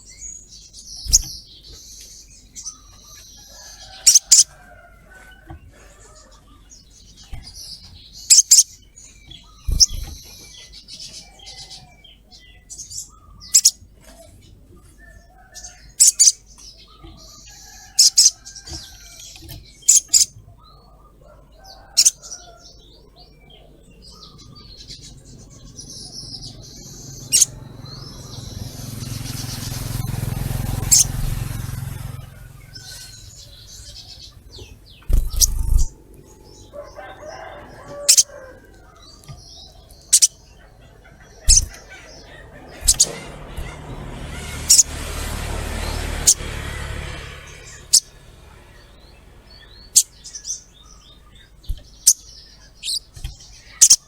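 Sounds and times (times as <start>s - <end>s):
bird twittering: 0.0s - 4.5s, 7.2s - 13.8s, 23.4s - 45.1s, 45.8s - 54.0s
bird chirping: 0.0s - 54.0s
low rushing noise: 26.5s - 50.8s.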